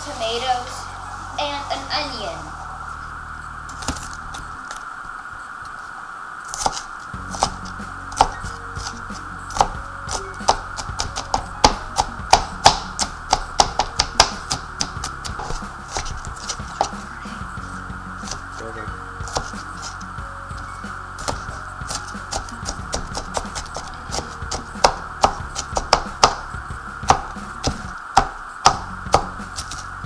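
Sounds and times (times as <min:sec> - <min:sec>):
steady hum: 0:00.0 - 0:30.0
knife chopping on cutting board: 0:03.8 - 0:04.8, 0:06.5 - 0:17.6, 0:18.2 - 0:29.9.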